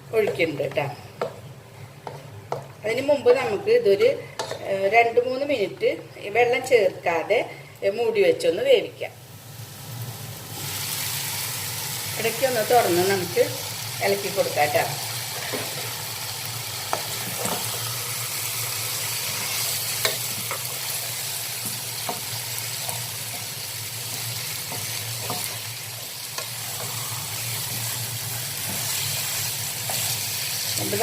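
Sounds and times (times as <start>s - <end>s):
chicken sizzling in a pot: 9.2s - 31.0s.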